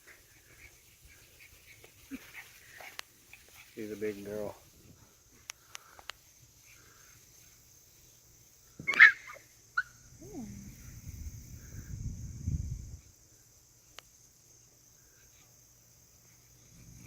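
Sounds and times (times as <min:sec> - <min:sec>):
crickets chirping: 0:00.0 - 0:17.0
puppy yelping: 0:08.9 - 0:09.9
puppy whining and growling: 0:10.2 - 0:11.0.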